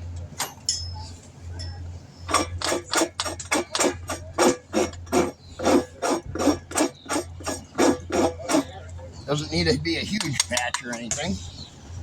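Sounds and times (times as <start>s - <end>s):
hand tool scraping tire: 2.3s - 8.8s.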